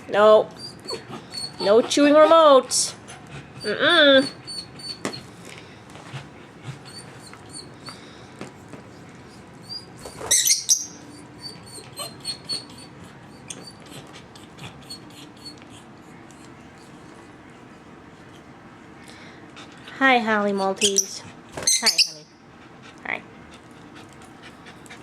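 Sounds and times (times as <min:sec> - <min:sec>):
dog whimpering: 0:00.5 - 0:05.2, 0:06.7 - 0:08.0, 0:09.3 - 0:16.2
lovebirds chirping: 0:21.7 - 0:22.2.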